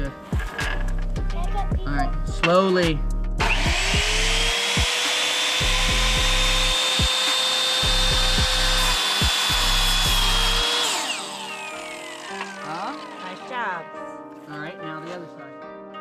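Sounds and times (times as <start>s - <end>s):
miter saw cutting wood: 3.4s - 13.7s.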